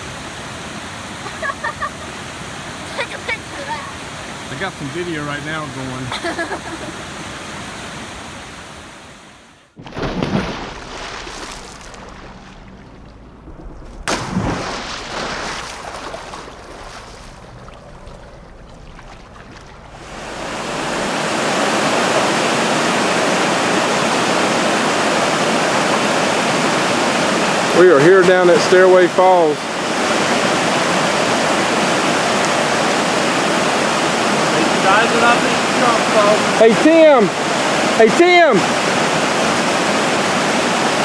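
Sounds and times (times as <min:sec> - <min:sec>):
waterfall rushing: 0:00.0 - 0:09.8, 0:14.1 - 0:41.0
sudden bumps: 0:09.8 - 0:21.1.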